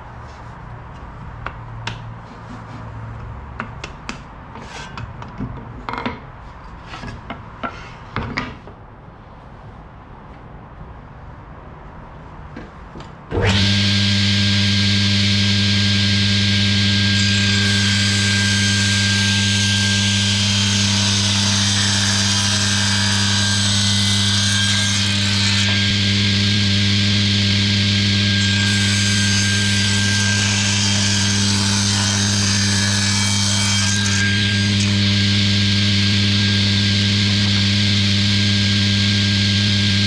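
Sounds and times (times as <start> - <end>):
table saw motor hum: 13.3 - 40.0
saw blade ripping wood: 27.8 - 37.7.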